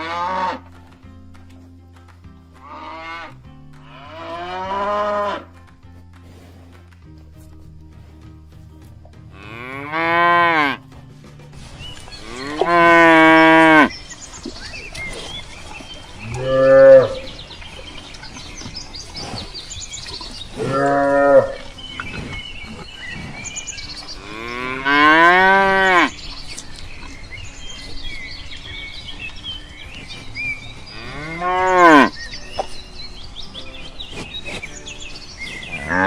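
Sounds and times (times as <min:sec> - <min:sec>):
cattle mooing: 0:00.0 - 0:00.7, 0:02.6 - 0:05.5, 0:09.4 - 0:10.8, 0:12.2 - 0:13.9, 0:16.2 - 0:17.3, 0:20.5 - 0:21.7, 0:24.2 - 0:26.2, 0:31.0 - 0:32.1, 0:35.7 - 0:36.0
faint bird chirps: 0:13.4 - 0:24.8, 0:25.9 - 0:36.0.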